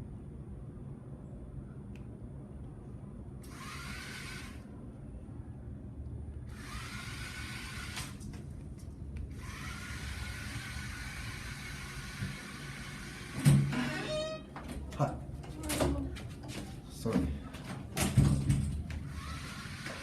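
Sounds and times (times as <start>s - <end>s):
small electric motors whirring: 3.4s - 4.6s, 6.5s - 8.2s, 9.3s - 13.4s, 19.1s - 20.0s.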